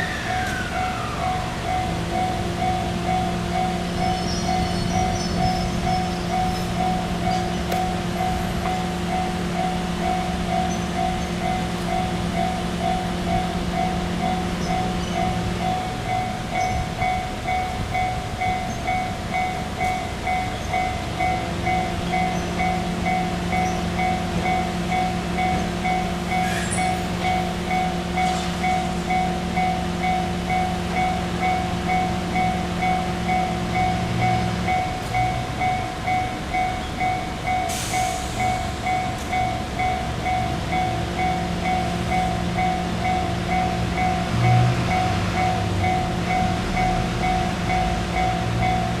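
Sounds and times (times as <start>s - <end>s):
electric train running past: 0.0s - 49.0s
level-crossing warning bell: 0.0s - 49.0s.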